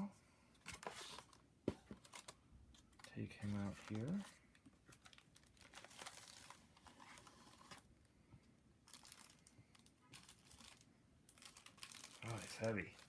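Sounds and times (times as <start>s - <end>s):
packaging rustling and crinkling: 0.6s - 7.9s, 8.8s - 13.0s.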